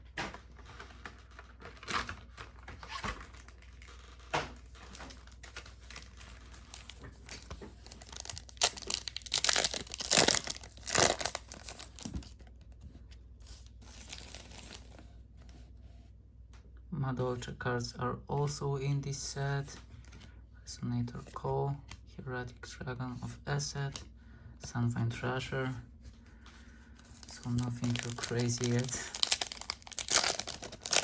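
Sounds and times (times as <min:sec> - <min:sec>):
foil pack tearing and crinkling: 0:01.3 - 0:12.4, 0:13.9 - 0:15.0, 0:27.1 - 0:31.0
cards rustling: 0:03.2 - 0:12.8, 0:13.4 - 0:15.1, 0:26.3 - 0:31.0.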